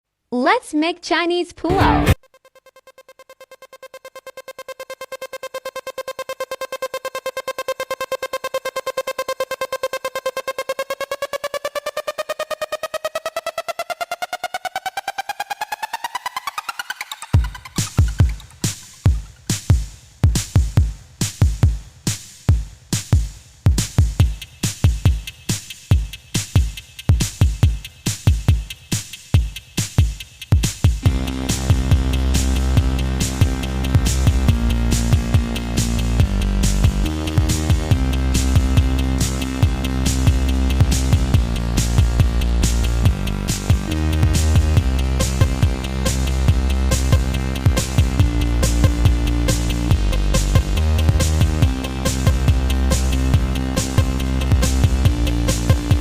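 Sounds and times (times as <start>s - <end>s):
pulsing synth note: 1.7s - 6.9s
electronic beat: 1.7s - 11.6s, 14.6s - 21.9s, 22.5s - 56.0s.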